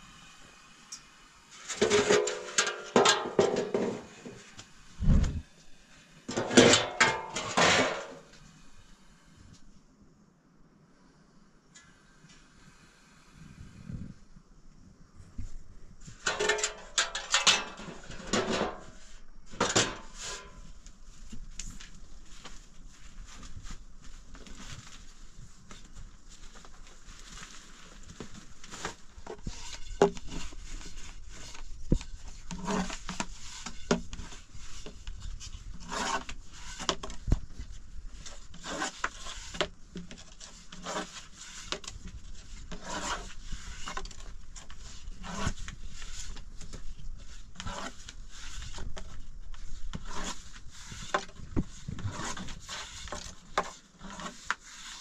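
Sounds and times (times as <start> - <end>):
rubbing and scraping on hard surface: 17.6 - 55.0.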